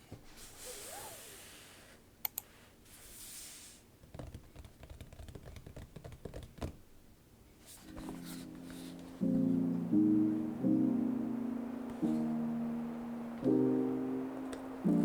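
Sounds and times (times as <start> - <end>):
soft hissing handling sounds: 0.0 - 4.0, 7.6 - 10.6, 11.6 - 15.0
typing on mechanical keyboard: 4.2 - 6.7.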